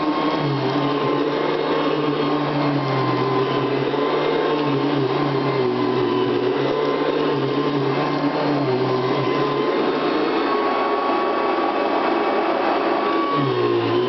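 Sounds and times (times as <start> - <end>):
upright vacuum cleaner running: 0.0 - 14.0.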